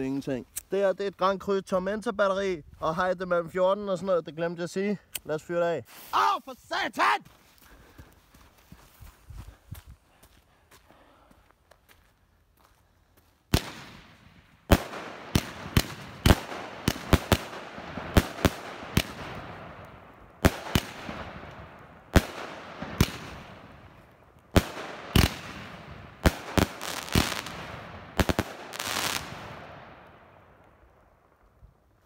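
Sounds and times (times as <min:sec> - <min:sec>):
firework crackling and hiss: 0:13.5 - 0:19.8, 0:20.4 - 0:23.8, 0:24.5 - 0:29.7
firework bangs: 0:13.5 - 0:30.3.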